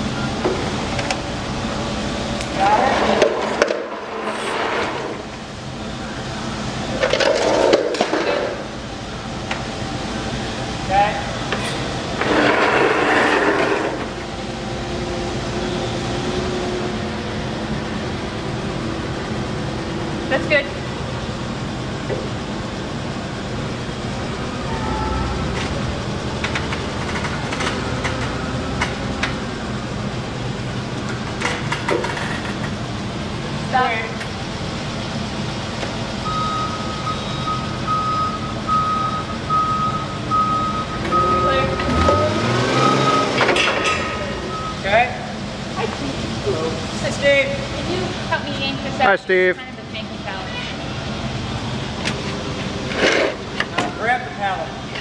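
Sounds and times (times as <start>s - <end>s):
heavy equipment rumbling: 0.0s - 49.0s
forklift engine running: 0.0s - 55.0s
sharp metallic clanks: 43.4s - 44.4s.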